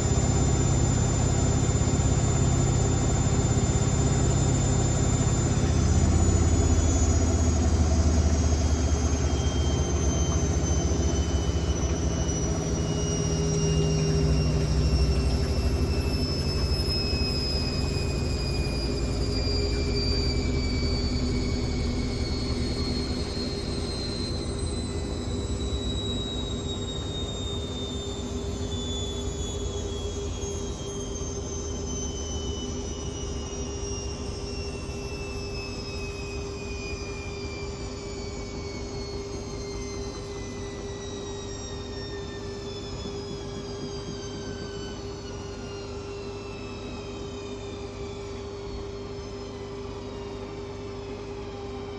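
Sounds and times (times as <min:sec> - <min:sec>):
washing machine drum spinning: 0:00.0 - 0:28.6
high motor whine: 0:00.0 - 0:51.9.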